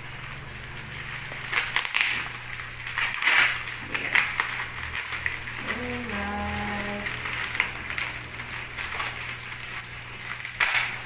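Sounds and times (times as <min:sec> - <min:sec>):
plastic packaging crinkling: 0:00.2 - 0:11.0.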